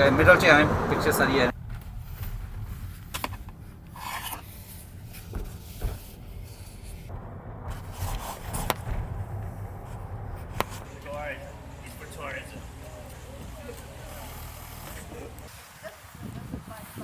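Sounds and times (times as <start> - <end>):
camera rubbing and scraping: 3.1 - 9.0
steady low rumble: 6.8 - 14.0.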